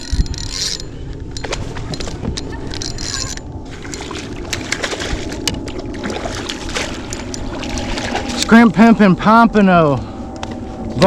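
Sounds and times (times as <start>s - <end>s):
water sloshing against kayak hull: 3.5s - 8.6s.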